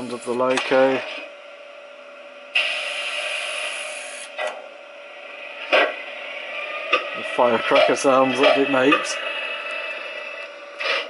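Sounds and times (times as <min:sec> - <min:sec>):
low hum from small speaker: 0:00.0 - 0:11.0
hiss: 0:02.6 - 0:04.3.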